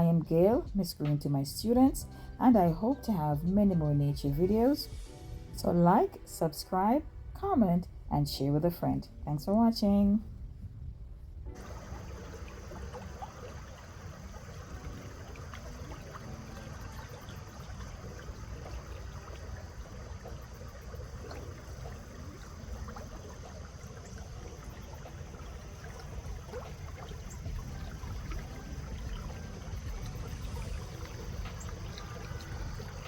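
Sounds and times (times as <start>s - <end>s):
water splashing: 11.5s - 33.0s
stream water rushing: 11.6s - 33.0s.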